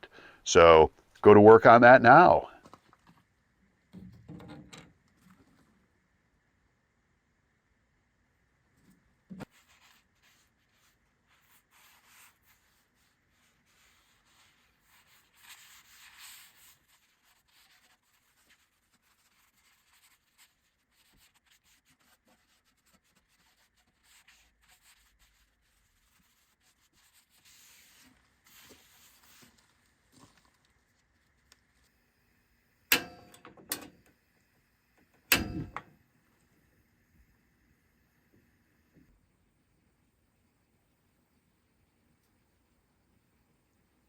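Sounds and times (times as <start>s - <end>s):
paper towel rubbing on griddle: 9.4s - 30.1s
sharp metallic knocks: 32.9s - 33.5s, 35.3s - 35.8s.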